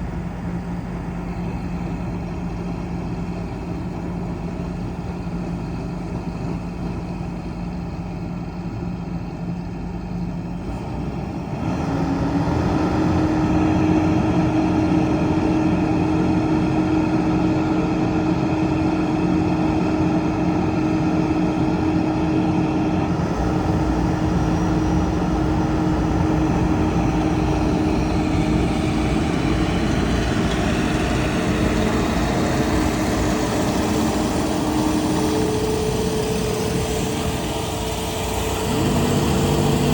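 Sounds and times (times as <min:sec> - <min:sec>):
harvester engine running: 0:00.0 - 0:39.9
steady machine hum: 0:21.2 - 0:39.9.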